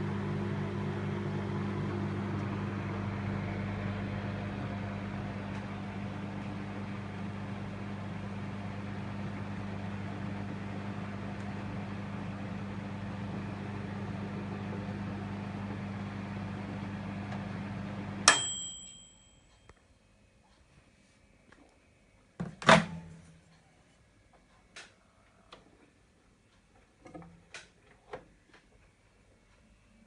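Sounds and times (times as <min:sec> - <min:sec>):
microwave oven humming: 0:00.0 - 0:19.7
microwave bell ding: 0:18.2 - 0:19.7.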